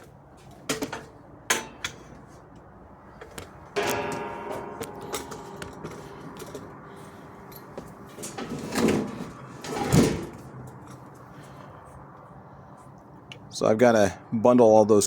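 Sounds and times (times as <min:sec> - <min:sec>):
cords and gear handling noise: 0:03.2 - 0:08.8.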